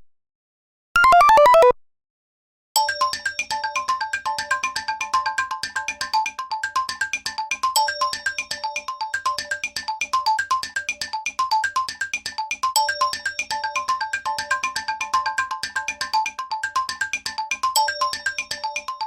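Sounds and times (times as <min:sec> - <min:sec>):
electronic ringtone melody: 0:01.0 - 0:01.7.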